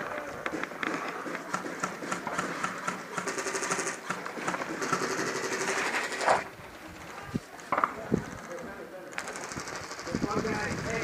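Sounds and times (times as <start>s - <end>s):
airsoft gun firing bursts: 0.6s - 6.4s, 8.2s - 11.0s.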